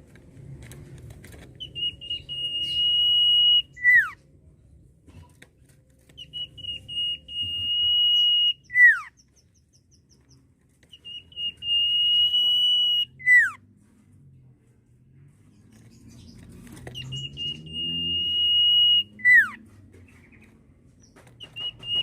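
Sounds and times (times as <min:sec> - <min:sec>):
bird whistling song: 0:01.6 - 0:04.2, 0:06.1 - 0:10.2, 0:10.9 - 0:13.6, 0:16.0 - 0:19.6, 0:21.4 - 0:22.0.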